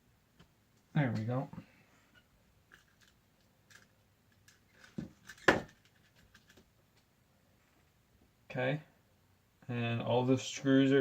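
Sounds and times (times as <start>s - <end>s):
laptop parts clicking and tapping: 2.8s - 7.0s.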